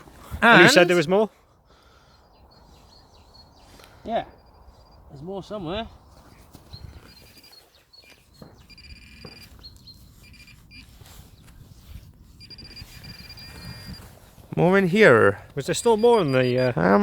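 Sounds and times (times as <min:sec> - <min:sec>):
metal detector tone: 0:07.0 - 0:11.3, 0:12.4 - 0:17.0.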